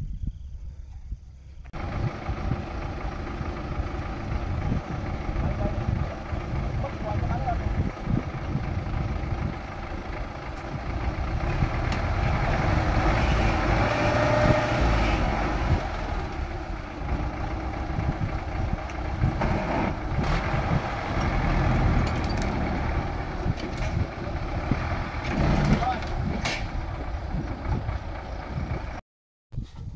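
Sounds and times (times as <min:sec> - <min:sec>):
tractor engine running: 0:00.8 - 0:29.0.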